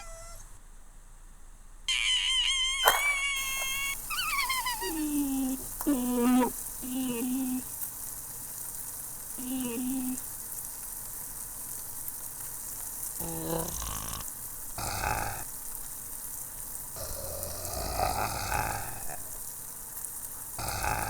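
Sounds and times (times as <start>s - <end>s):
steady sizzling hiss: 0.0s - 21.0s
wavering pitched cartoon tones: 1.9s - 7.6s.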